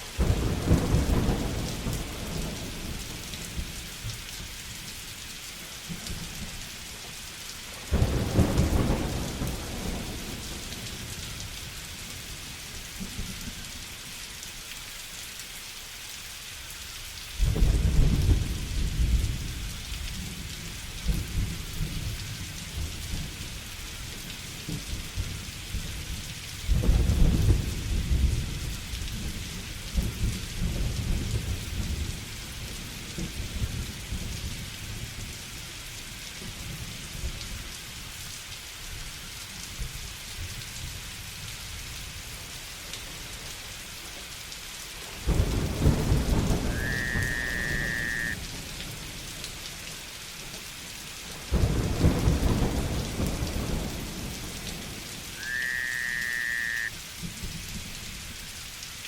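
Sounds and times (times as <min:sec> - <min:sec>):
heavy rain: 0:00.0 - 0:59.0
thunder rumbling: 0:07.9 - 0:10.9, 0:45.2 - 0:49.1, 0:51.5 - 0:57.8
high whistle-like call: 0:46.7 - 0:48.4, 0:55.4 - 0:56.9.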